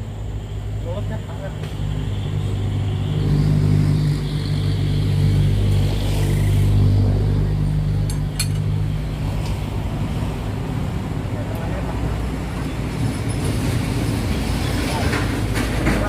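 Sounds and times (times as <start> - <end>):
sharp metallic clinks: 8.0 - 8.8.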